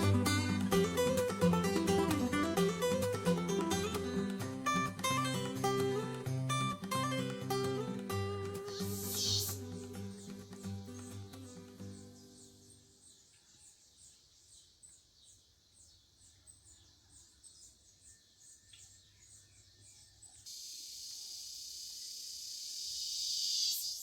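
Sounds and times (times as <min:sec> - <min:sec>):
rapid high chirping: 0:00.0 - 0:12.6, 0:20.5 - 0:24.0
high hiss: 0:08.1 - 0:10.3, 0:20.5 - 0:24.0.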